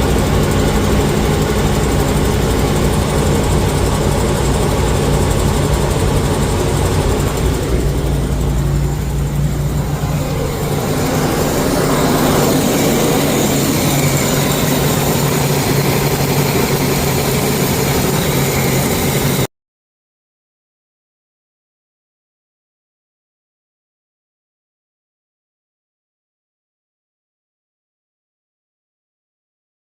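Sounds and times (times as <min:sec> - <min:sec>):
motorhome engine idling: 0:00.0 - 0:19.5.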